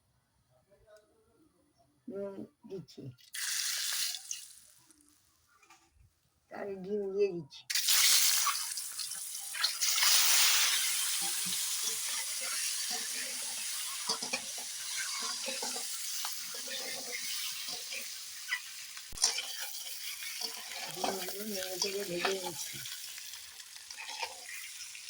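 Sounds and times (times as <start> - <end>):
oil crackling: 3.2 - 5.0, 7.7 - 25.0
eggs sizzling in hot oil: 3.2 - 5.2, 7.7 - 25.0.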